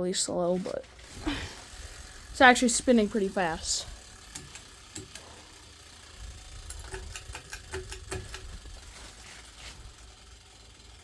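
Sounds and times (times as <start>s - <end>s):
ceiling fan motor hum: 0.0s - 11.0s
light clicks and rattles: 6.2s - 10.2s.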